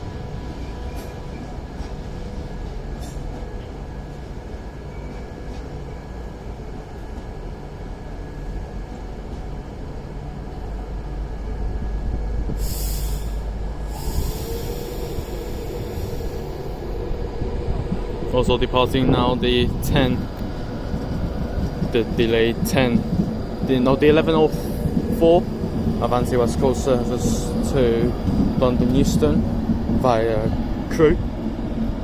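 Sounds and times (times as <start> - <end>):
train rumbling: 0.0 - 32.0
high hiss: 12.6 - 17.0.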